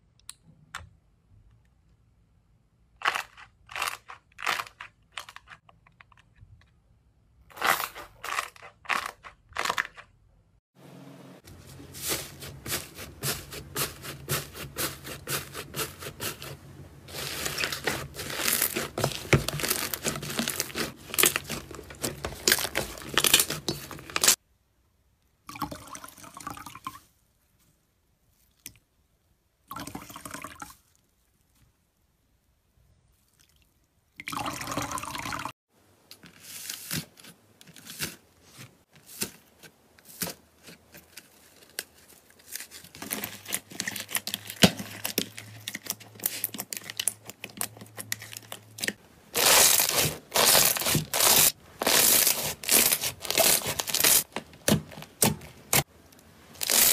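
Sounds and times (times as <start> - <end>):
slime squelching: 11.6 - 24.4, 42.7 - 56.9.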